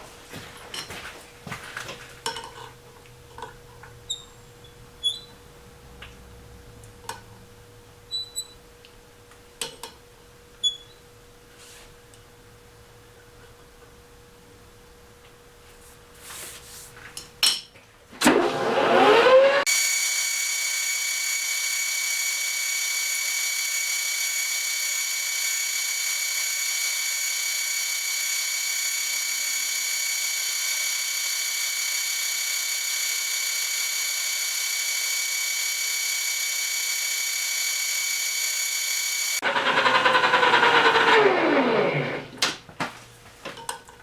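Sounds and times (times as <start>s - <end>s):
small motor high-pitched whine: 18.3s - 42.4s.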